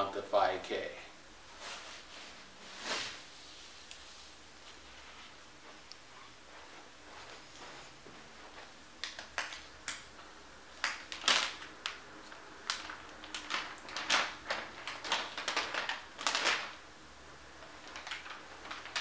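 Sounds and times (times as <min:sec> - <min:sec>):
packaging clicks and rustles: 0:10.8 - 0:16.8, 0:17.6 - 0:19.0.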